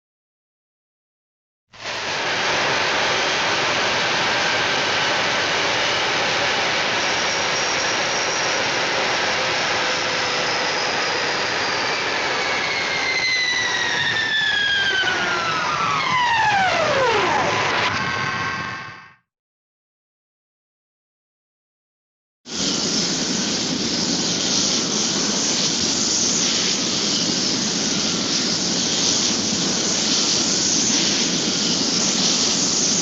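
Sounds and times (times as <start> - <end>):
falling whistle: 9.7 - 19.2
cartoon jet-like roar: 12.8 - 19.2.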